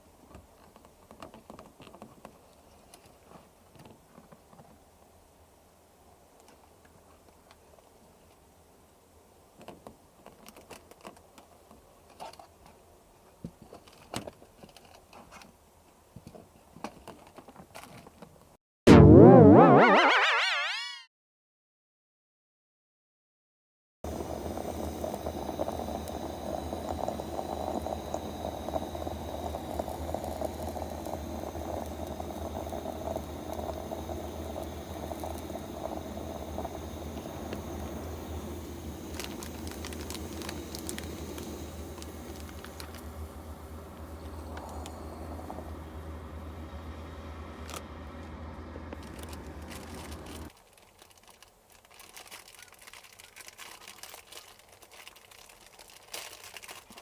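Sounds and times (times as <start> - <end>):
water boiling and bubbling: 24.1 - 47.7.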